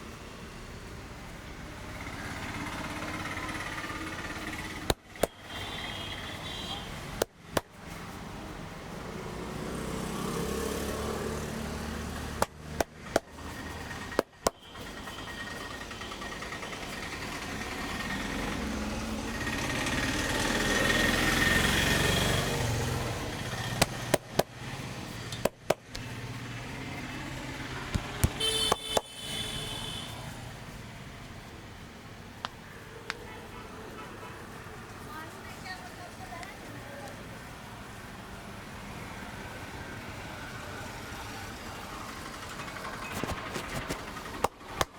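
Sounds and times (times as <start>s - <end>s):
street traffic noise: 0.0s - 44.9s.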